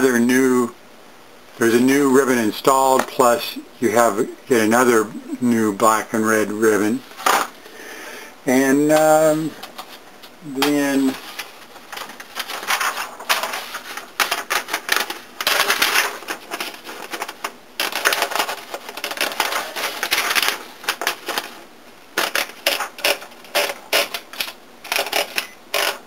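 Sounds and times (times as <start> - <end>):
typewriter platen ratcheting: 22.2 - 26.0.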